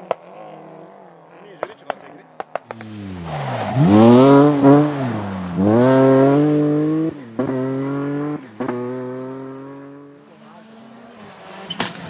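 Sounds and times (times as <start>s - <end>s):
quick gear upshifts: 0.0s - 12.0s
rally car engine accelerating: 0.0s - 12.0s.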